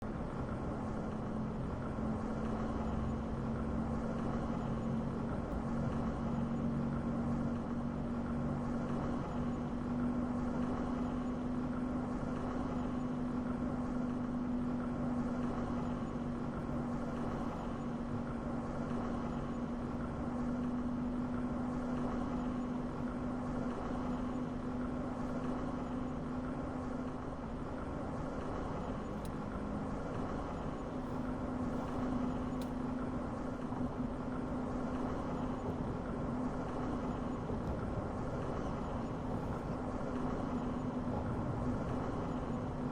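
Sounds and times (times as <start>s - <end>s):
car engine drone: 27.4s - 42.9s.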